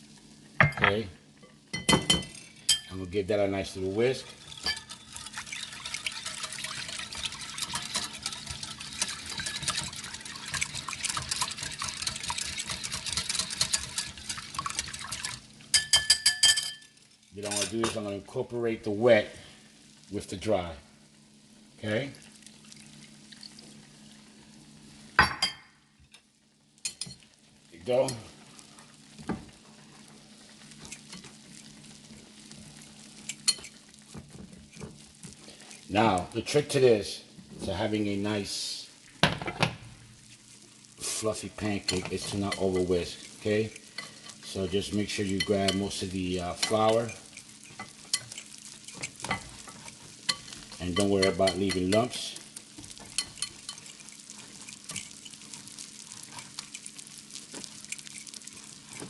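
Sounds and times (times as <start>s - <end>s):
faint sizzle: 0.0s - 59.0s
whisk stirring batter in bowl: 4.0s - 17.7s, 30.0s - 35.8s, 41.0s - 59.0s
liquid sloshing: 4.4s - 15.4s
whisk clicking against bowl: 4.5s - 16.3s, 46.5s - 52.1s.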